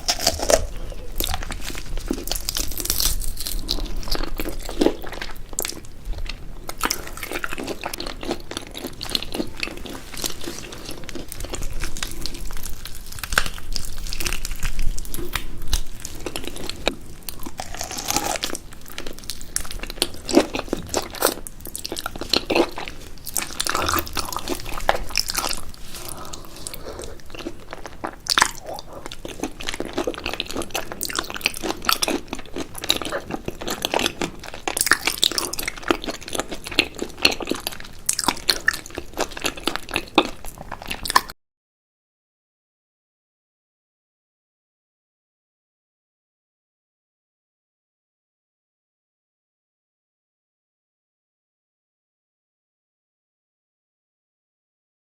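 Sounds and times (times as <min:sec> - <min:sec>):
person crunching and chewing: 0:00.0 - 0:41.3.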